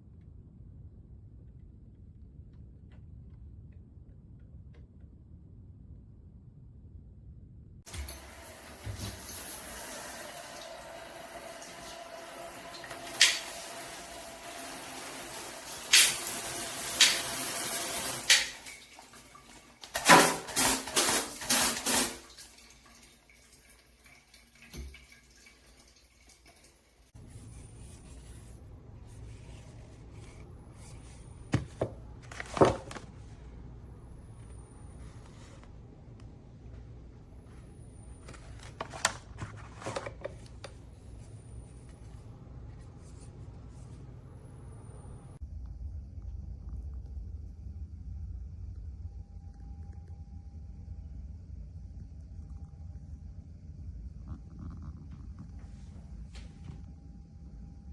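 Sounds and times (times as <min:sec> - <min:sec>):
low steady hum: 0:00.0 - 0:16.8, 0:23.2 - 0:57.9
shower head spraying water: 0:07.9 - 0:18.8.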